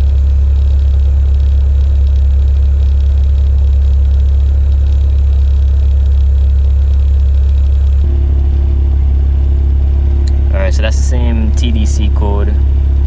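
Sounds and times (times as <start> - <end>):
car engine idling: 0.0 - 13.0
steady higher tones: 10.2 - 12.7.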